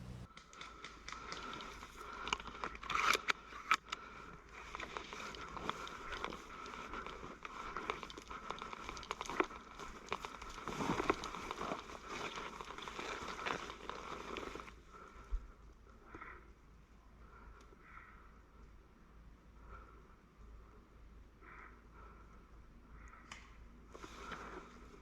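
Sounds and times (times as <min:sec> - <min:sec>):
gear crinkling rustle: 0:00.0 - 0:15.3.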